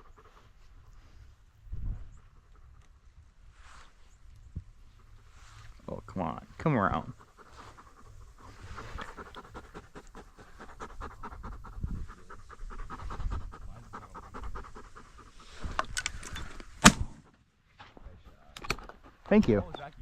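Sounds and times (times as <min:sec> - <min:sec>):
dog panting: 0:00.0 - 0:01.2, 0:04.9 - 0:16.5, 0:18.8 - 0:19.6.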